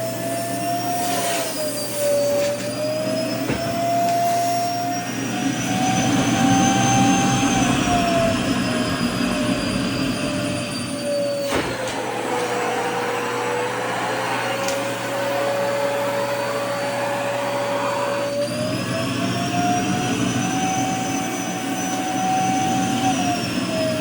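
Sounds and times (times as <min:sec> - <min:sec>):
vacuum cleaner running: 0:00.0 - 0:24.0
fabric sucked against nozzle: 0:00.9 - 0:02.6.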